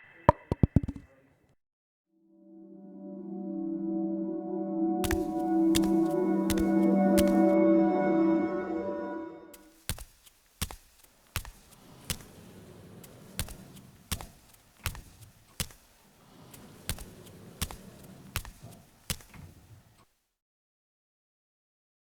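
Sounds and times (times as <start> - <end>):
sharp knocks: 0.3 - 1.0.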